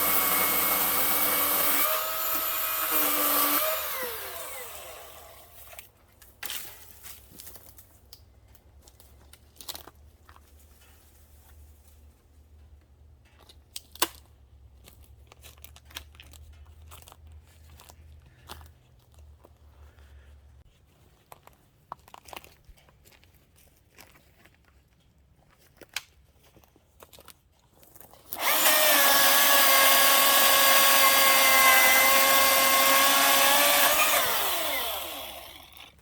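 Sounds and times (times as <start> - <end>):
electric chainsaw motor whining: 0.0 - 5.8, 28.3 - 36.0.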